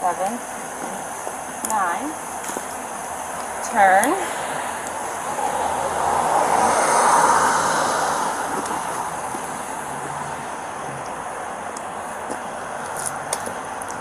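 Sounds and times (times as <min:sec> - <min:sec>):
background traffic: 0:00.0 - 0:14.0
vehicle passing by: 0:03.6 - 0:11.6.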